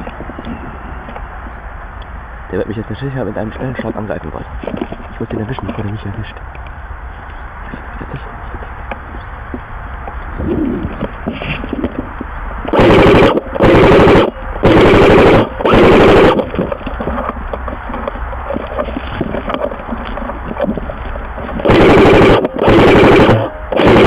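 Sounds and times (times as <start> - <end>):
airsoft gun bursts: 12.7 - 16.6, 21.6 - 24.0.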